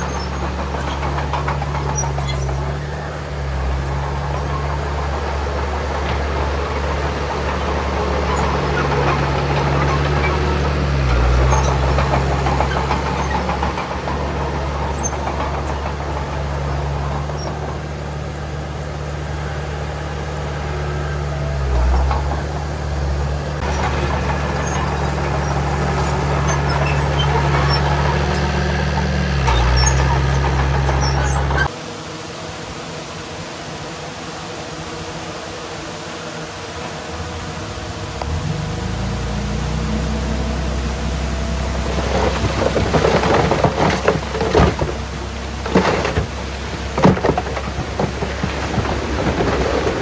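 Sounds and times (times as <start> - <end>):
bulldozer diesel engine running: 0.0 - 31.7, 36.7 - 50.0.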